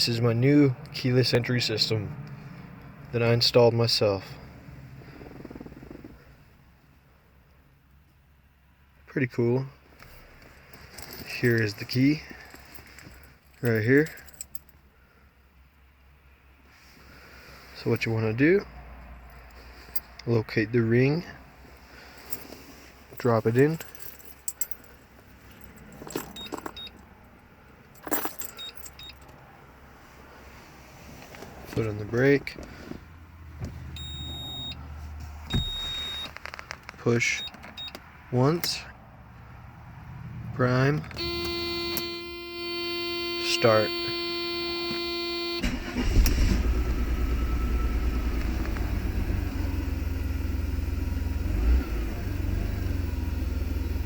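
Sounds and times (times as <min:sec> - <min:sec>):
car engine starting and idling: 0:01.6 - 0:06.9, 0:31.8 - 0:36.8, 0:41.0 - 0:54.0
keys jingling on key ring: 0:23.6 - 0:26.9, 0:28.0 - 0:29.4.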